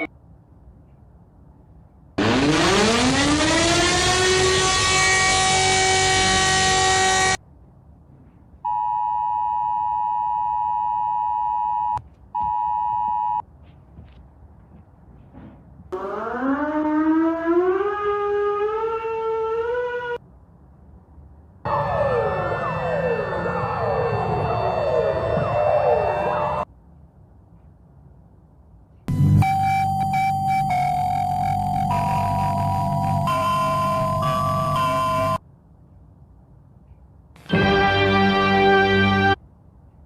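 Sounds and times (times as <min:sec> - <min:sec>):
siren tone sweeping up: 0:02.2 - 0:07.4, 0:16.0 - 0:20.2, 0:21.7 - 0:26.7, 0:29.1 - 0:35.4
siren wail rising in steps: 0:02.2 - 0:07.4, 0:16.0 - 0:20.2, 0:21.7 - 0:26.7, 0:29.1 - 0:35.4.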